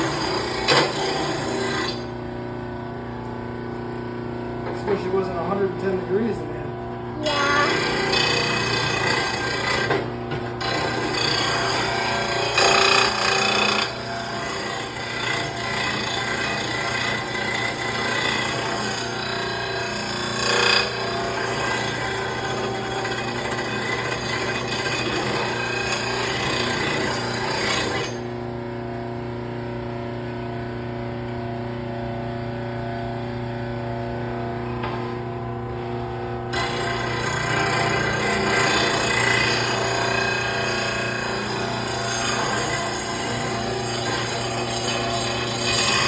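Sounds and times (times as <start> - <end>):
grinder grinding metal blade: 0.0 - 2.1, 7.2 - 28.3, 36.5 - 46.0.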